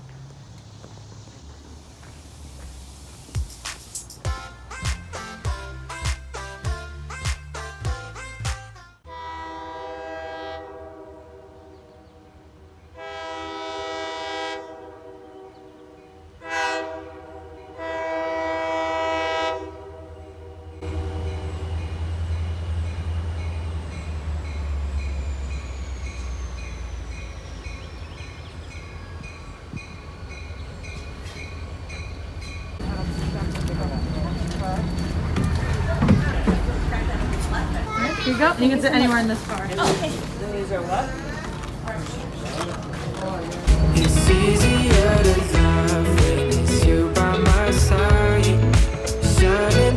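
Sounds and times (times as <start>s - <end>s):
train rumbling: 0.0s - 8.4s, 9.0s - 49.9s
train horn blasts: 8.8s - 22.6s.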